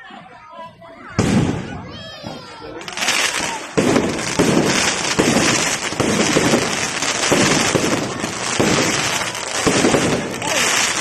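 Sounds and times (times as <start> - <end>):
aerial fireworks bursting and crackling: 1.2 - 1.8, 2.8 - 11.0.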